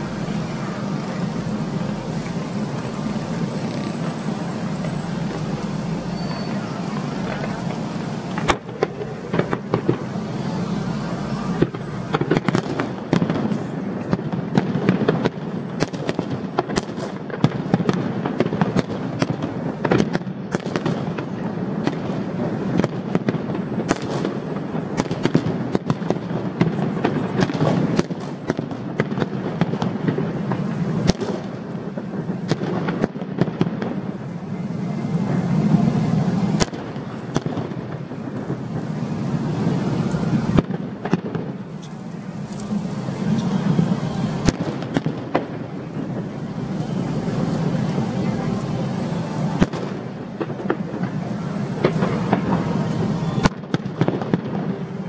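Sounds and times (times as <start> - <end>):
fireworks bangs and crackles: 0.0 - 55.0.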